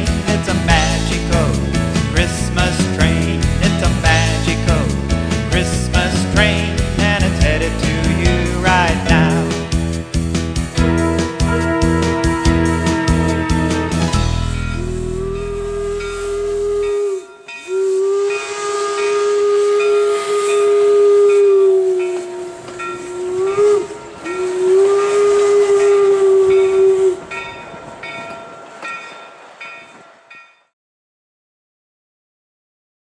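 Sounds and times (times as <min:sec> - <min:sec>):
hissing steam: 0:00.0 - 0:30.1
sustained music chord: 0:08.4 - 0:17.1
steam locomotive whistle: 0:10.7 - 0:30.4.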